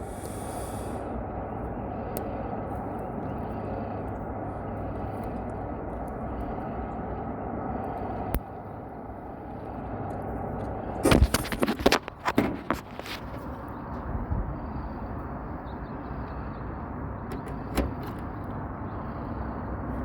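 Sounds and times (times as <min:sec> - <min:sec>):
low background rumble: 0:00.0 - 0:20.0
taps and rustling of wires: 0:10.1 - 0:13.5.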